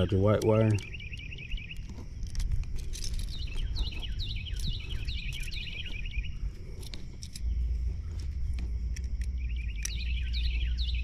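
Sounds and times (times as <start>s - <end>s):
steady low rumble: 0.0s - 11.0s
downward-sweeping bird chirps: 0.6s - 2.0s, 3.2s - 6.6s, 9.4s - 11.0s.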